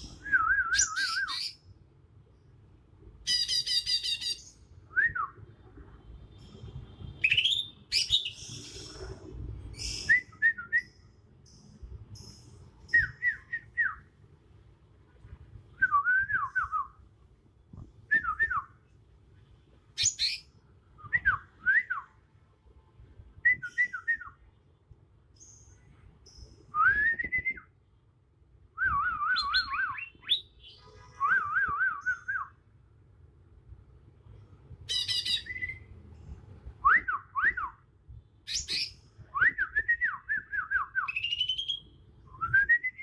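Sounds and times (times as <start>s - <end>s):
bird singing whistled phrases: 0.2s - 1.6s, 7.2s - 8.7s, 9.8s - 11.0s, 28.8s - 32.6s, 34.9s - 35.9s, 38.5s - 43.0s.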